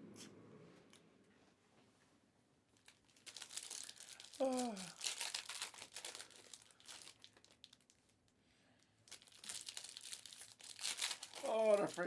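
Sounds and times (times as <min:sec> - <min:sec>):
foil wrappers crinkling: 0:02.8 - 0:08.2, 0:09.0 - 0:12.0.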